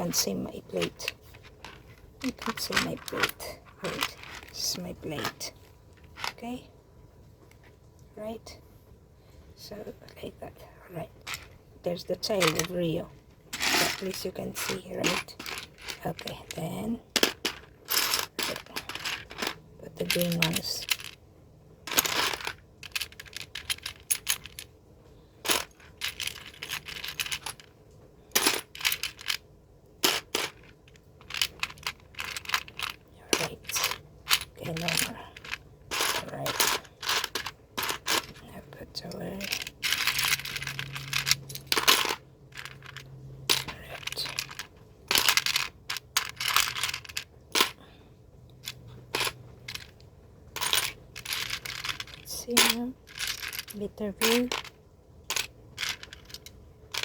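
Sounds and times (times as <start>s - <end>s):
plastic pieces clicking and clattering: 0.8s - 5.4s, 11.2s - 11.6s, 12.2s - 12.8s, 13.5s - 21.2s, 21.9s - 24.7s, 25.4s - 27.7s, 28.3s - 29.4s, 30.0s - 47.8s, 48.6s - 50.0s, 50.6s - 57.0s.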